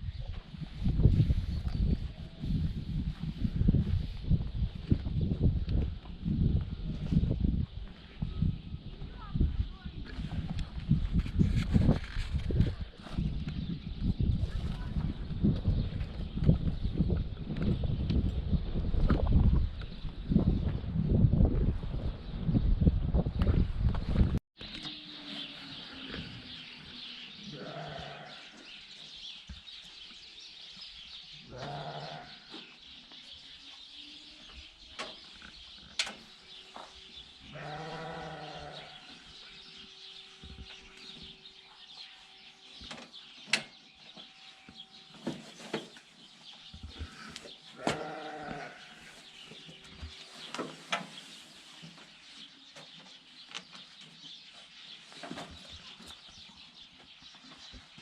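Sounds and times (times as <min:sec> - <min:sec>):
livestock bleating: 0:27.4 - 0:28.6, 0:31.4 - 0:32.5, 0:37.4 - 0:39.2, 0:47.8 - 0:49.0.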